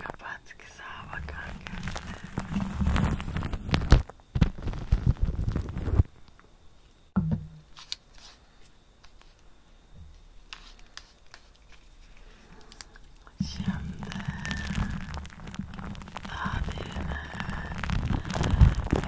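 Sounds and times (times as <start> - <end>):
rubbing on microphone: 1.1 - 6.1.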